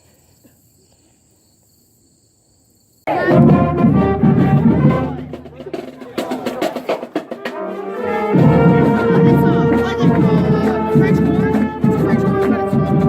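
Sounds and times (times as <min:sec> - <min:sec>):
background music with steady beat: 0:03.1 - 0:13.0.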